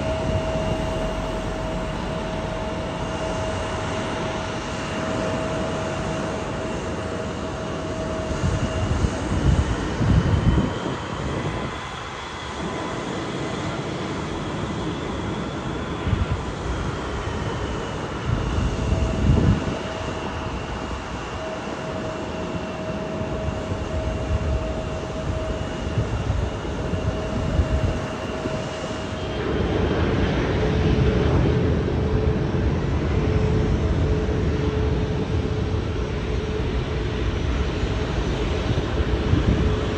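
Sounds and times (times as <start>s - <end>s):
high jet engine whine: 0.0s - 39.9s
jet engines roaring: 0.0s - 39.9s.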